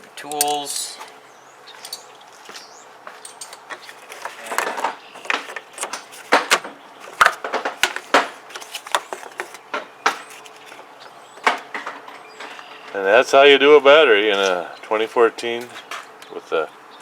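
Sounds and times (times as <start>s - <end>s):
metal hand tools clinking: 0.2s - 1.0s.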